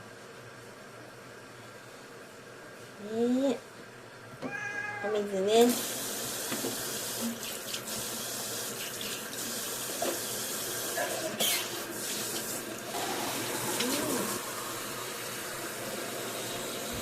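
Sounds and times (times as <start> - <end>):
tap water running into sink: 5.7 - 17.0.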